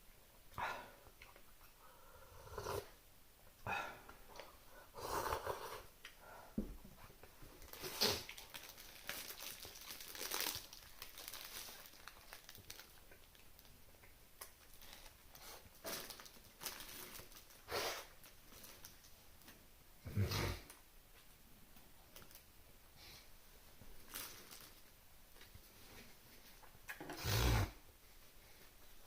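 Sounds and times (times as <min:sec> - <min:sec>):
rustling and crinkling handling: 0:06.8 - 0:19.7, 0:21.1 - 0:22.8, 0:23.5 - 0:26.8.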